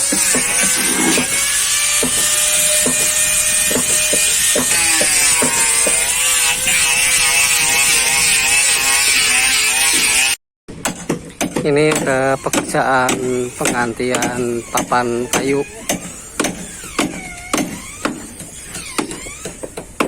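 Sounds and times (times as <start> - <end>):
power tool motor on wood: 0.0 - 10.4.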